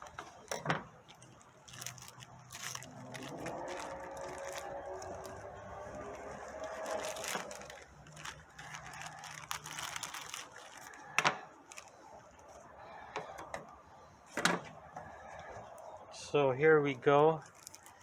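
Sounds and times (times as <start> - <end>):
packaging rustling: 0.0 - 13.6, 17.4 - 18.0.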